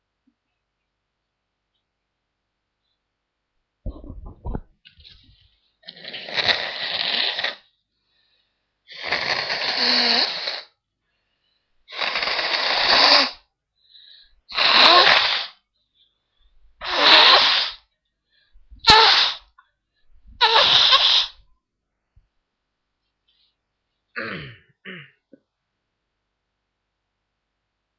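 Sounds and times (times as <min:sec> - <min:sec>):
person blowing nose: 0:05.8 - 0:07.7, 0:08.9 - 0:10.8, 0:11.9 - 0:13.5, 0:14.5 - 0:15.6, 0:16.8 - 0:17.8, 0:18.8 - 0:19.5, 0:20.4 - 0:21.4.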